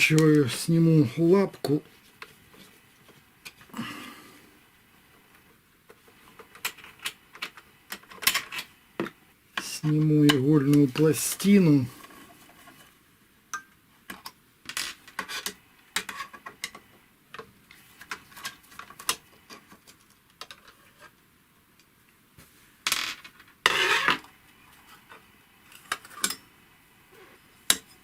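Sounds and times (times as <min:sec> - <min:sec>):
metal parts scraping: 0:22.9 - 0:24.2.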